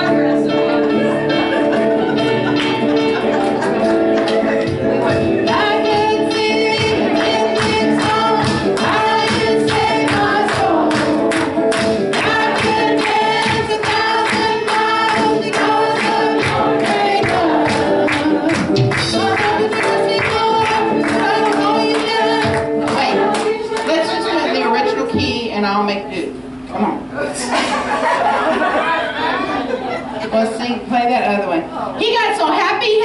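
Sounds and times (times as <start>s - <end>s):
church band instruments: 0.0s - 25.2s
voices singing: 0.0s - 25.5s
percussive beat: 3.8s - 23.8s.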